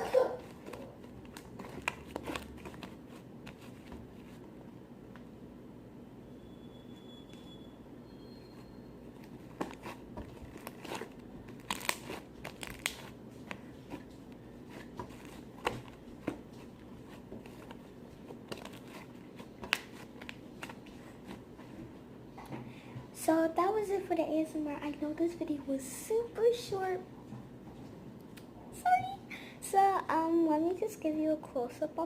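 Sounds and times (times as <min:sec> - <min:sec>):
slime crackling and popping: 0:00.4 - 0:03.8, 0:09.2 - 0:21.4.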